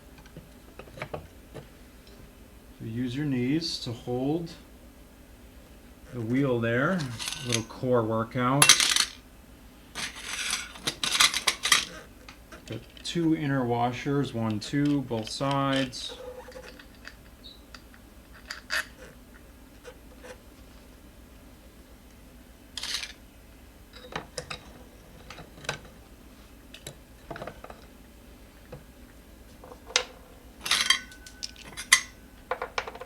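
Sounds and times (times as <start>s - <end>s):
small metal parts clinking: 6.9s - 7.8s, 8.6s - 9.2s, 10.0s - 12.1s, 14.5s - 19.1s, 22.8s - 23.2s, 29.6s - 33.0s.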